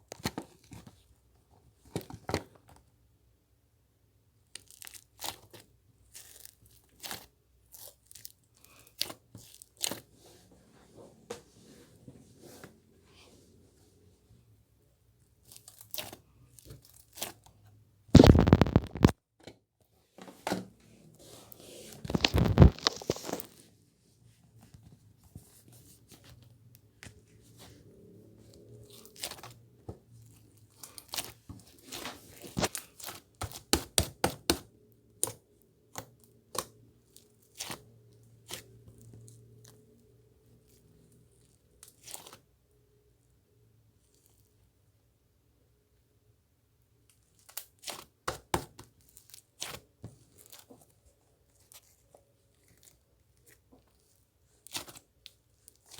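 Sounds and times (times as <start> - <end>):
slime squished by hand: 18.2 - 19.1, 22.1 - 23.5, 28.8 - 29.6, 30.3 - 39.7, 47.4 - 55.9
sticky crackles and pops: 18.2 - 19.2, 22.0 - 23.5.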